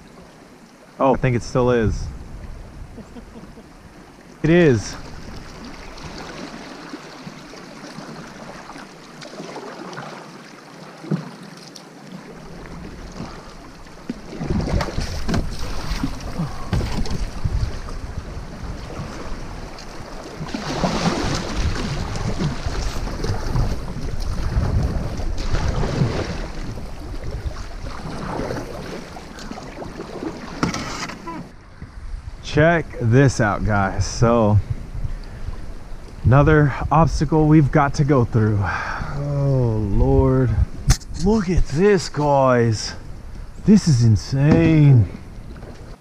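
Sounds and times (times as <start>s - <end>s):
wind buffeting microphone: 1.3s - 6.6s, 14.3s - 30.6s, 31.4s - 42.1s.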